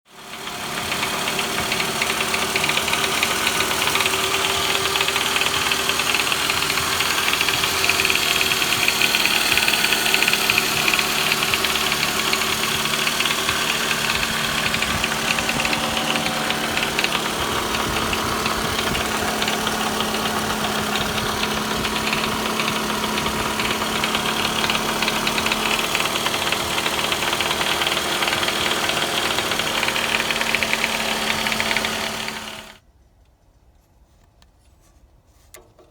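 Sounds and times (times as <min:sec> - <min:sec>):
car engine idling with rattle: 0:00.1 - 0:32.8.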